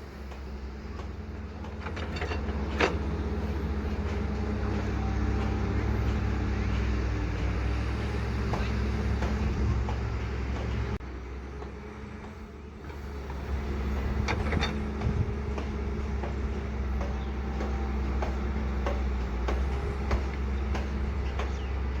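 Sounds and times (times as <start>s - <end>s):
heavy machinery engine droning: 0.0s - 22.0s.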